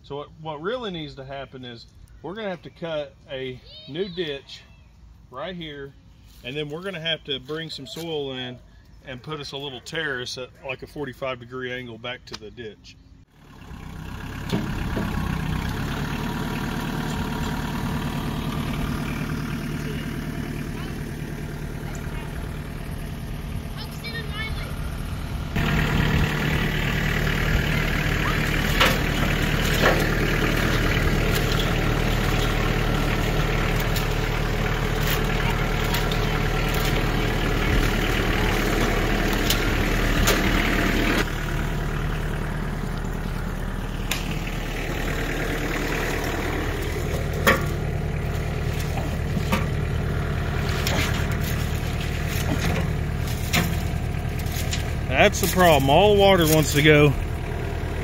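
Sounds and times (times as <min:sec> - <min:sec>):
vehicle engine running: 0:13.3 - 0:58.0.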